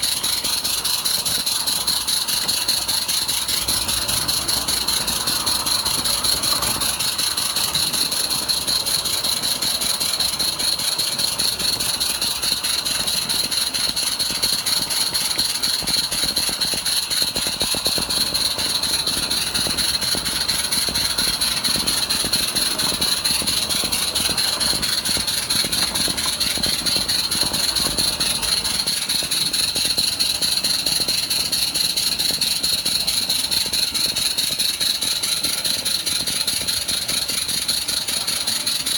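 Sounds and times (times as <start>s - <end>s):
steam locomotive running: 0.0s - 38.9s.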